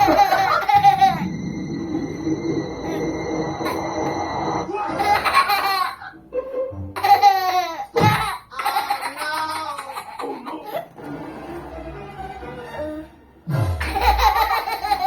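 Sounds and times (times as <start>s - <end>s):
baby laughing: 0.0s - 1.4s, 4.8s - 6.2s, 7.0s - 10.9s, 13.8s - 15.0s
background music: 0.0s - 8.4s, 10.9s - 15.0s.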